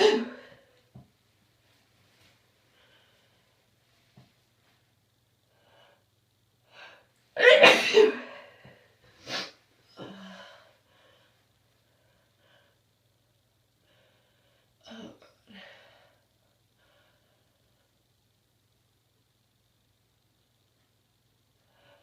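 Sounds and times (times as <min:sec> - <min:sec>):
person sneezing loudly: 0:00.0 - 0:00.5, 0:07.4 - 0:08.4.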